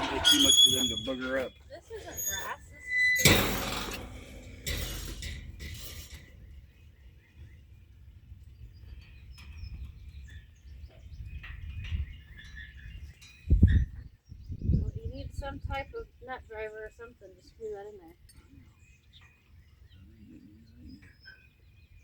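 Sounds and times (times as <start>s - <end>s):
small birds chirping: 6.1s - 22.0s.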